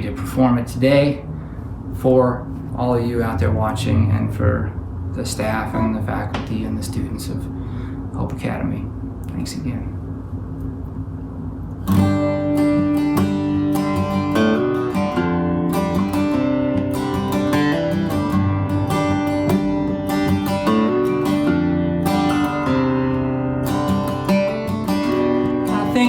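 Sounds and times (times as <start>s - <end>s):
acoustic guitar strumming chords: 11.8s - 26.0s.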